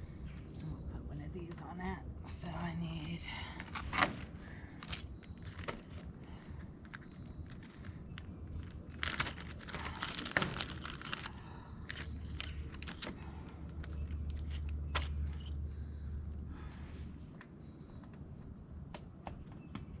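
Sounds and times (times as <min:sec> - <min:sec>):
low steady hum: 0:00.0 - 0:20.0
packaging crinkling: 0:03.6 - 0:15.5.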